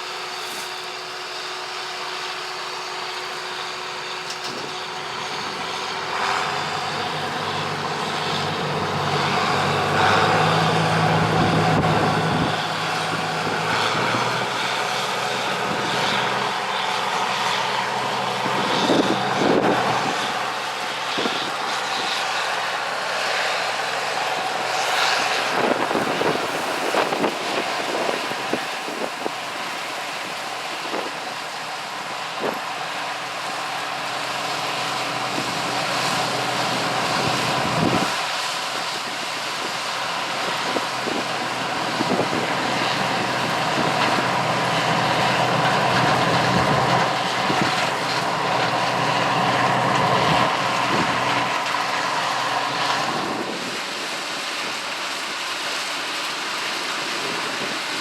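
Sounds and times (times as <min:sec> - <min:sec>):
combine harvester diesel engine: 0:00.0 - 0:58.0
wind on the microphone: 0:24.6 - 0:31.4, 0:36.7 - 0:38.3, 0:38.9 - 0:48.7.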